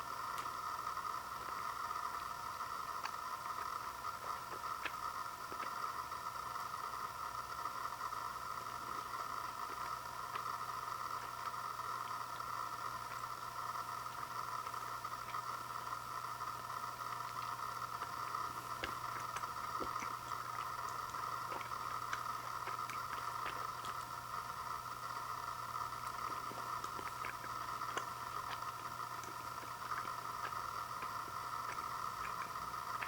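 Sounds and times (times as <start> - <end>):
low electrical hum: 0.0 - 33.0.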